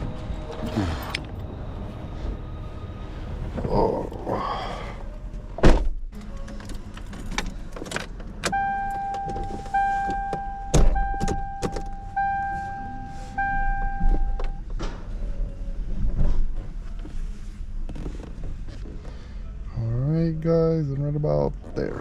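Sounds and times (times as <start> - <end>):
electronic warning beeps: 8.5 - 14.7.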